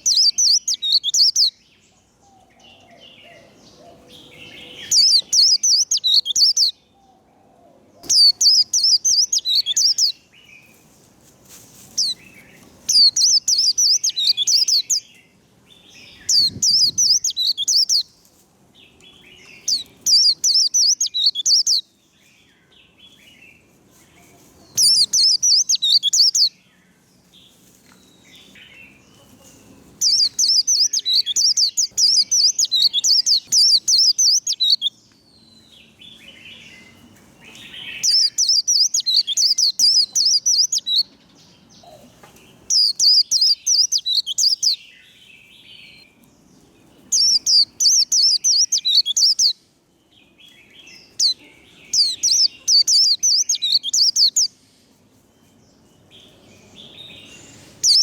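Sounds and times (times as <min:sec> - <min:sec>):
faint soft bird chirps: 0:00.0 - 0:06.8, 0:08.0 - 0:10.8, 0:11.9 - 0:18.2, 0:19.0 - 0:23.3, 0:23.9 - 0:26.9, 0:27.5 - 0:41.2, 0:47.0 - 0:49.6, 0:50.3 - 0:58.0
bird twittering warble: 0:16.2 - 0:18.0, 0:19.5 - 0:21.8, 0:24.7 - 0:26.5, 0:47.1 - 0:49.6, 0:57.3 - 0:58.0.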